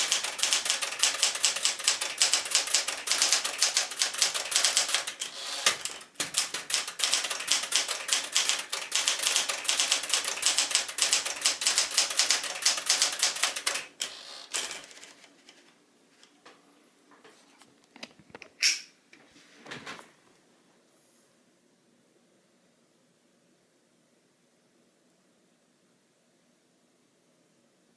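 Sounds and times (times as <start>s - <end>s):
manual typewriter typing: 0.0s - 15.6s.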